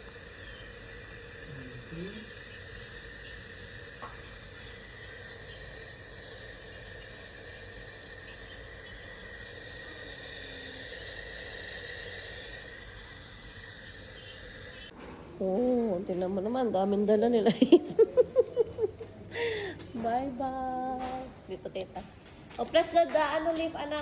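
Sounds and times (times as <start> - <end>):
steady hiss: 0.0 - 14.9
faint constant hum: 0.0 - 24.0.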